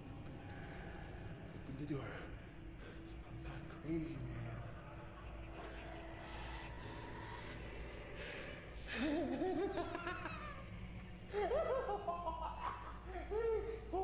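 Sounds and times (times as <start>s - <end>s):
low steady drone: 0.0s - 14.0s
person laughing in bursts: 8.9s - 10.6s, 11.3s - 13.6s.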